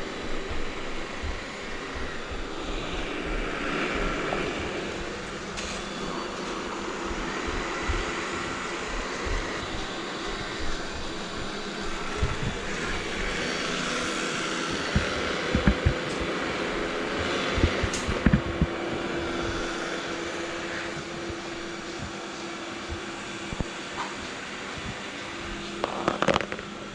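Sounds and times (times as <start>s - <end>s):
robot vacuum whirring: 0.0s - 24.1s
steady hum: 0.0s - 26.9s.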